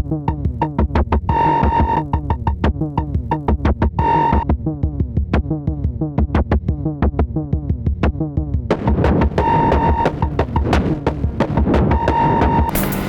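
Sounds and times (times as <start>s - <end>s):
synthesized drum hits: 8.7s - 13.0s.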